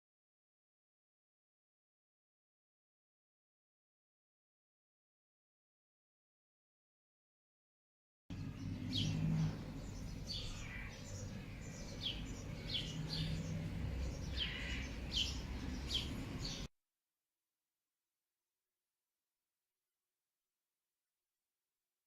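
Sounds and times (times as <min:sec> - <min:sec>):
birds chirping: 0:08.3 - 0:16.7.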